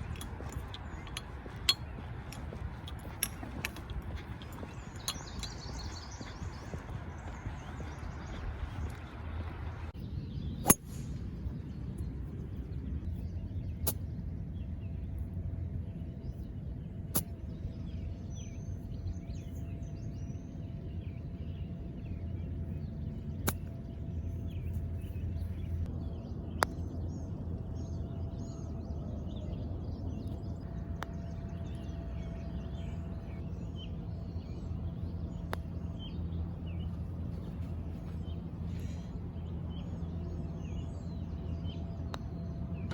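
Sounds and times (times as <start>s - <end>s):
birds chirping faintly: 0.0s - 42.9s
outdoor rumble: 0.0s - 42.9s
golf balls being struck: 23.4s - 24.2s, 34.3s - 42.9s.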